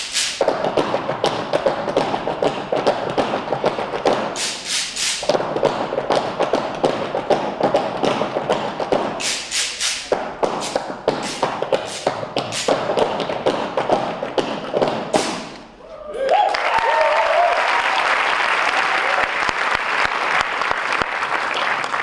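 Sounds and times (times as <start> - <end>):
tap shoes on stage floor: 0.0 - 15.8.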